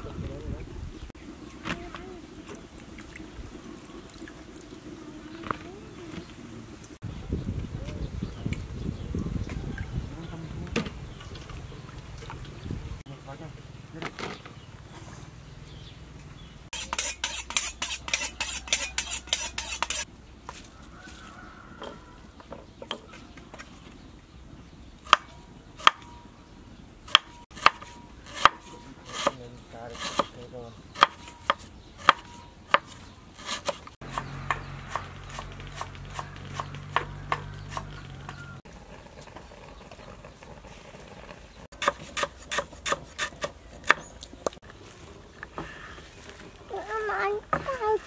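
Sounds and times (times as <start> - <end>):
knife chopping on wooden board: 27.1 - 30.4, 31.0 - 38.0, 41.8 - 44.0.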